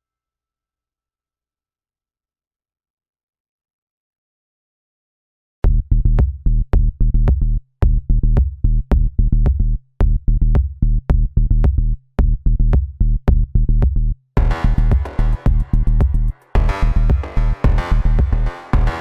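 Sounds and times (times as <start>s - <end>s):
electronic music with deep drum beat: 5.7s - 19.0s.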